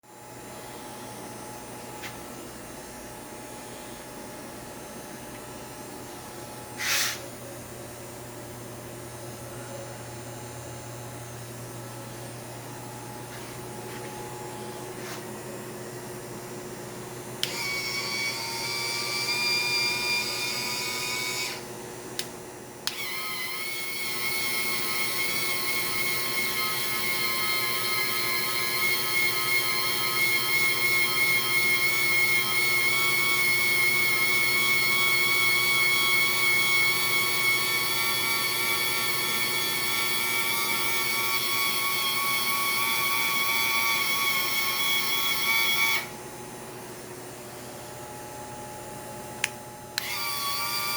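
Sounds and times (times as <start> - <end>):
electric motor whining: 17.4 - 21.6, 22.9 - 46.1, 50.0 - 50.9.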